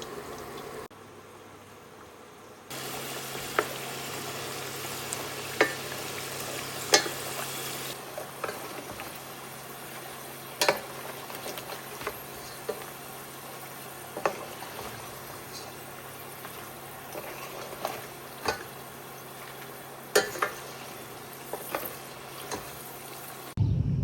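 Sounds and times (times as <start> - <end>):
food sizzling in a frying pan: 2.7 - 23.6
utensil knocking and scraping pan: 14.1 - 23.0.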